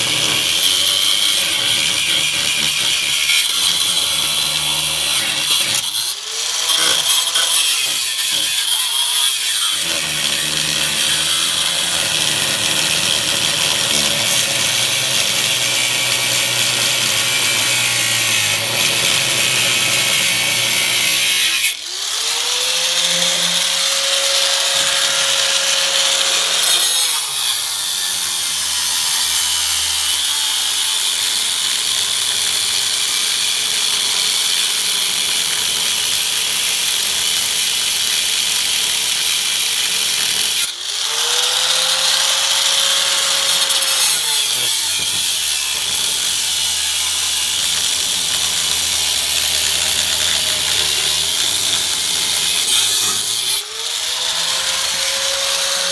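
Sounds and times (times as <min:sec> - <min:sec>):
harsh grinding on metal: 0:00.0 - 0:55.9
grinder motor whine: 0:08.8 - 0:26.8, 0:40.7 - 0:55.9.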